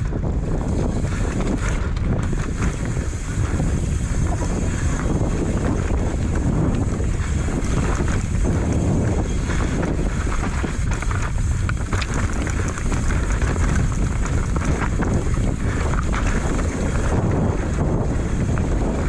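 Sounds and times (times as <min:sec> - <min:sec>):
wind buffeting microphone: 0:00.0 - 0:19.0
mountain bike rattling: 0:09.4 - 0:17.2
tyres knocking over rocks: 0:11.8 - 0:13.0.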